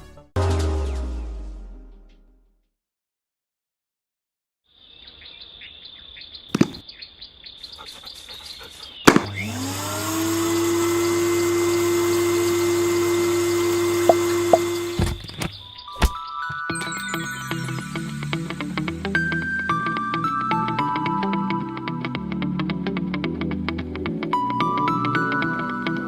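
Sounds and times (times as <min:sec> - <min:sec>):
handheld vacuum motor whine: 0:06.6 - 0:06.8, 0:09.1 - 0:15.5
vacuum switch click: 0:14.0 - 0:14.9.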